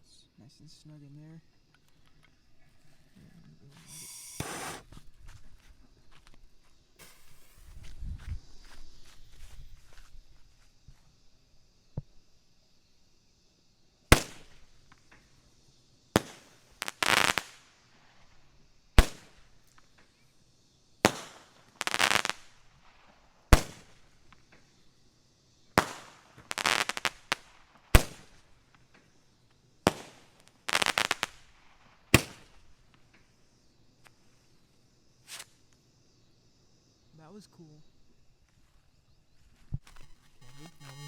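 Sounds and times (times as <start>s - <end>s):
firework crackling: 3.8s - 4.9s, 7.0s - 8.8s, 14.1s - 15.4s, 16.1s - 19.9s, 21.0s - 24.4s, 25.7s - 29.2s, 29.8s - 33.3s
roman candle pops: 3.8s - 5.0s, 32.1s - 33.0s.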